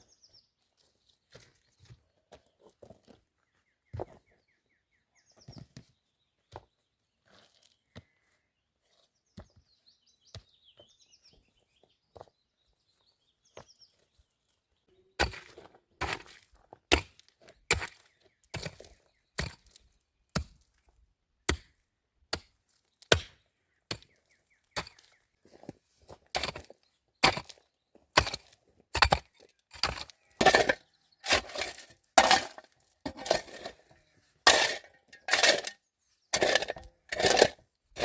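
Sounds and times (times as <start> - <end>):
small birds chirping: 0.0 - 15.2, 17.9 - 20.3, 22.8 - 28.6
axe chopping wood: 23.1 - 23.4.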